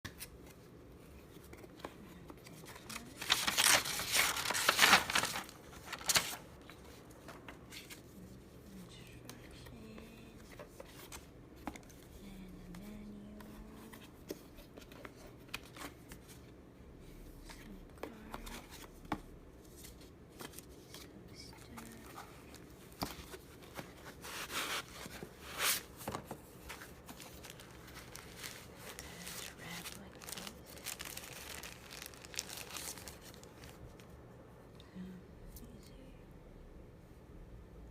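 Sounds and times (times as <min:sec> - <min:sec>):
packaging tearing and crinkling: 0:02.8 - 0:06.4, 0:27.0 - 0:33.7.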